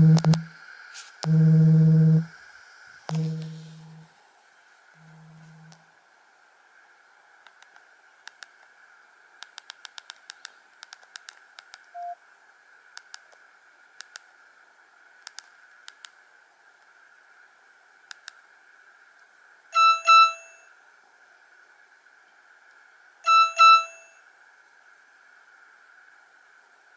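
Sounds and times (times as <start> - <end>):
buzzy electronic phone beeps: 0.0 - 0.5, 1.3 - 2.3, 3.1 - 4.0, 12.0 - 12.2, 19.8 - 20.7, 23.3 - 24.2
faint steady hiss: 0.0 - 26.9
short low beep: 12.0 - 12.2, 19.8 - 20.7, 23.3 - 24.2.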